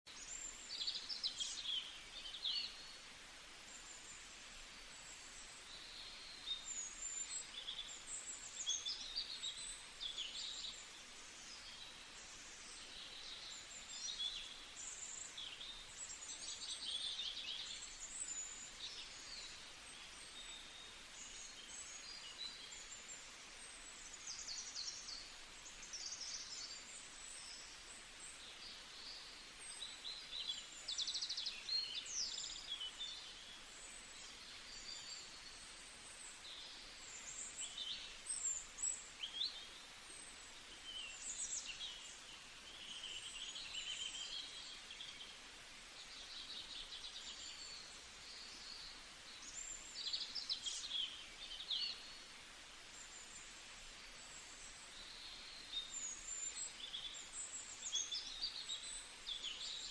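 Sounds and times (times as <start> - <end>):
steady background hiss: 0.1 - 59.9
songbirds chirping and singing: 46.0 - 52.4.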